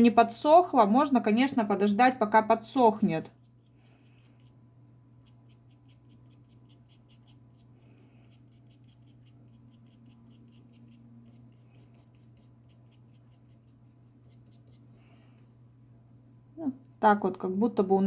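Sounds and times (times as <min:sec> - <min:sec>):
steady low hum: 0:00.8 - 0:18.0
brush dabbing on paper: 0:03.3 - 0:15.2.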